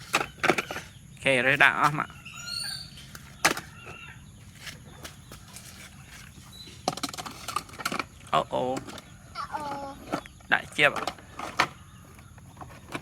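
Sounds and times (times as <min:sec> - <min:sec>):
high chirping animal calls: 0:00.8 - 0:05.4.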